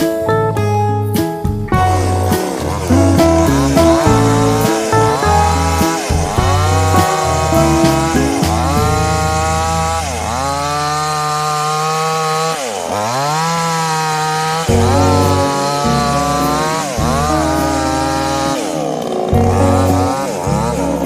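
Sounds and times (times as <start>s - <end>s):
background music with bass line: 0.0s - 10.6s, 14.7s - 18.6s, 19.3s - 21.0s
chainsaw cutting wood: 1.8s - 21.0s.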